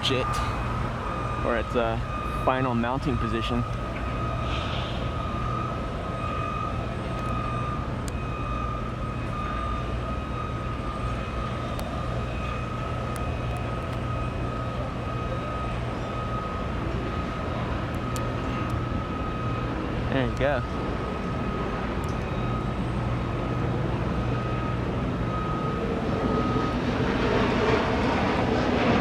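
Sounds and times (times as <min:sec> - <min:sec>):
constant high whine: 0:00.0 - 0:29.0
construction machinery engine hum: 0:00.0 - 0:29.0.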